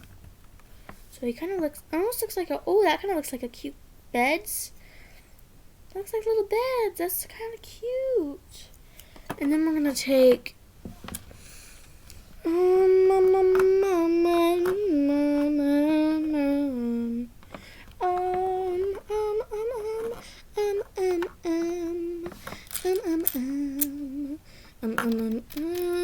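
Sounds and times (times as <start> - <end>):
person humming: 12.4 - 26.0.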